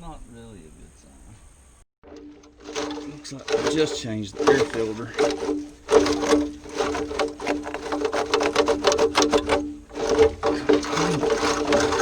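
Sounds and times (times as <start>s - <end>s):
engine starter cranking: 2.0s - 12.0s
rapid even clicking: 2.0s - 12.0s.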